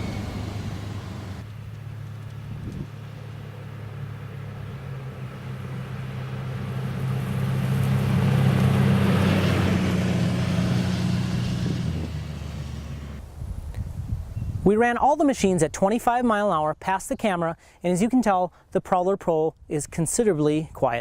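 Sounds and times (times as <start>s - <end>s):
utility vehicle driving past: 0.0s - 13.2s.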